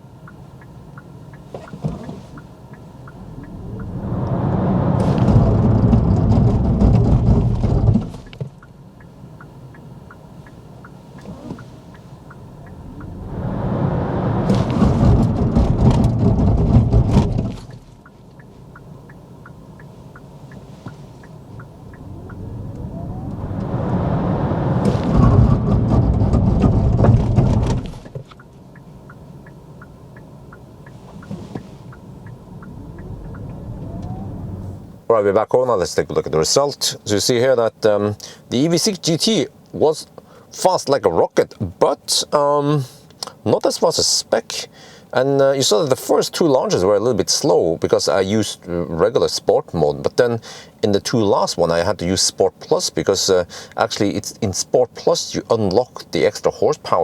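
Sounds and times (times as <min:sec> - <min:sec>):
road and drive noise: 0:00.0 - 0:43.5
rising electric motor whine: 0:03.0 - 0:06.8, 0:12.5 - 0:16.3, 0:21.6 - 0:26.4, 0:32.2 - 0:35.0.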